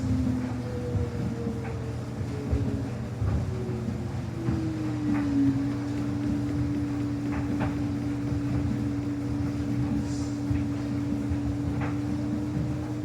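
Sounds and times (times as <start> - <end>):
washing machine motor whine: 0.0 - 13.0
low hum: 4.9 - 13.0.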